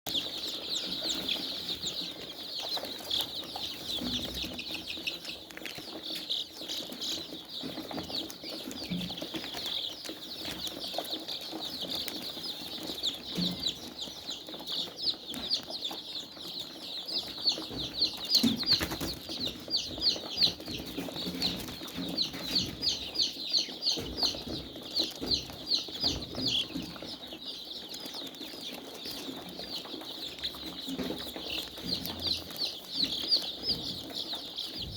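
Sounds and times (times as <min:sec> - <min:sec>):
chickens clucking: 0:00.1 - 0:34.9
chickens peeping: 0:00.1 - 0:34.9.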